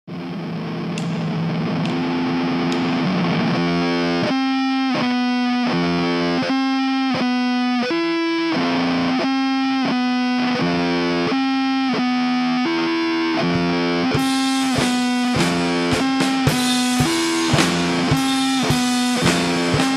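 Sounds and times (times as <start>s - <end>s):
drums: 0.1s - 6.6s, 13.3s - 19.9s
distorted electric guitar: 0.1s - 19.9s.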